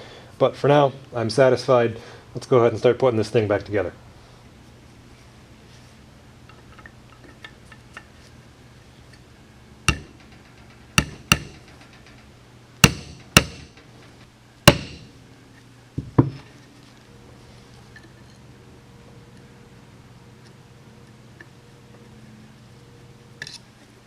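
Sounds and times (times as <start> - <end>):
hammer tapping metal: 9.9 - 12.0, 12.8 - 13.9, 14.7 - 15.1.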